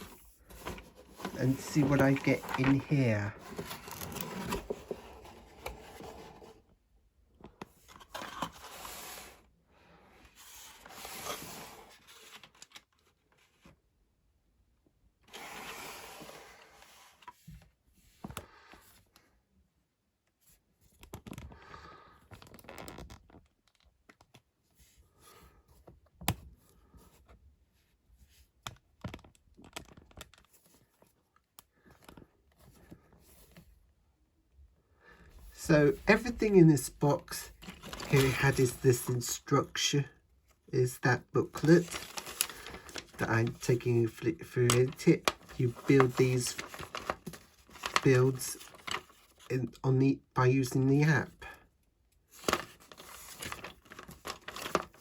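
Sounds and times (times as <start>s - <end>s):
cardboard tearing and scraping: 0.0s - 6.4s, 37.6s - 38.2s, 41.6s - 43.3s, 45.2s - 49.5s, 52.4s - 55.0s.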